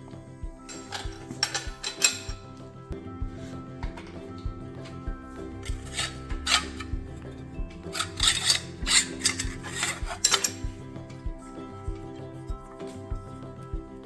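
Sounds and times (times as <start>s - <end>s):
background music: 0.0s - 14.0s
hand tool scraping metal: 5.4s - 11.2s.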